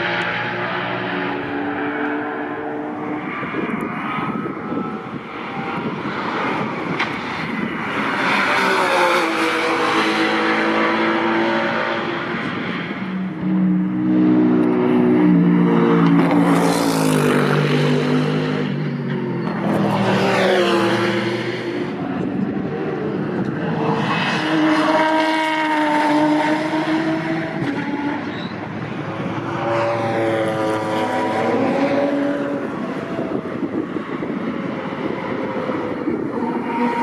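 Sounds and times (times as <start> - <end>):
race car engines passing: 0.0 - 37.0.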